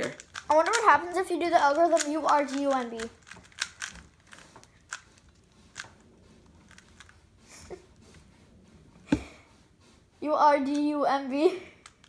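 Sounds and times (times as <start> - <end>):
plastic cube clicks: 0.0 - 0.9, 1.7 - 5.0.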